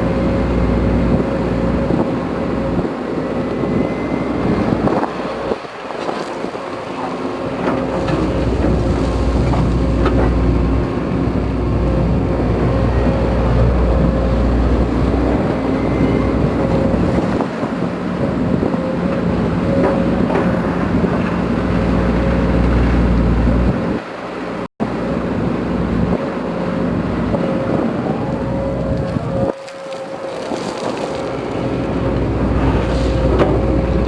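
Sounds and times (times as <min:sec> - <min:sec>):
hydraulic pump whine: 0:00.0 - 0:24.0, 0:25.0 - 0:34.0
excavator engine rumbling: 0:00.0 - 0:34.0.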